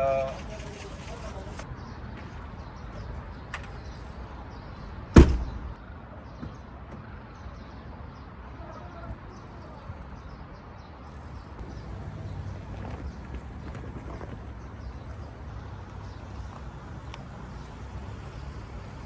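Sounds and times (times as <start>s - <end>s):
car door shutting: 5.2s - 5.7s.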